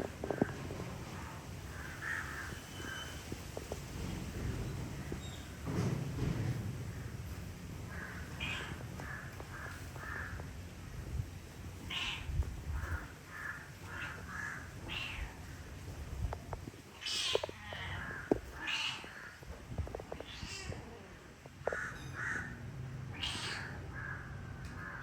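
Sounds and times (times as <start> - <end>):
cats meowing: 7.9 - 10.2, 11.7 - 15.6, 16.9 - 19.4, 20.0 - 24.8.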